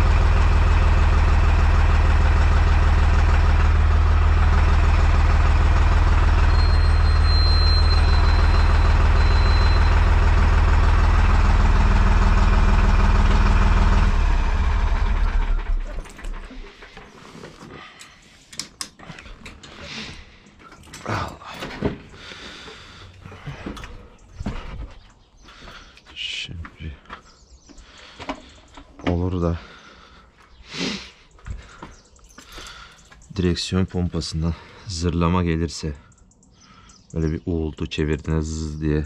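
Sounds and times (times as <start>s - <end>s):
diesel tractor engine idling: 0.0s - 17.6s.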